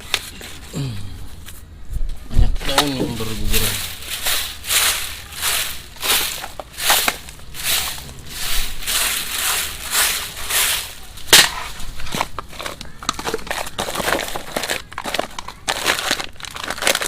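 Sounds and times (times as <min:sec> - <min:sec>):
crackly rustling of leaves: 0:00.0 - 0:17.0
broom sweeping leaves: 0:02.6 - 0:12.3.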